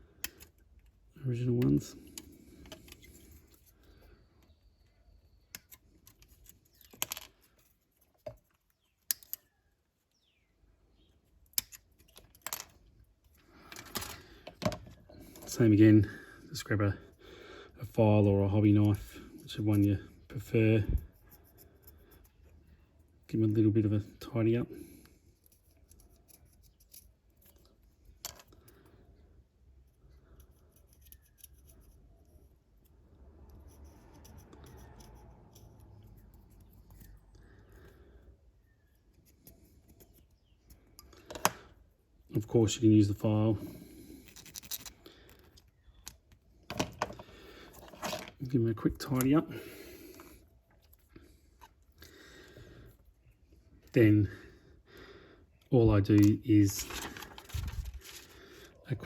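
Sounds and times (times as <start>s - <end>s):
plastic parts handling: 44.2s - 48.5s, 56.0s - 58.8s.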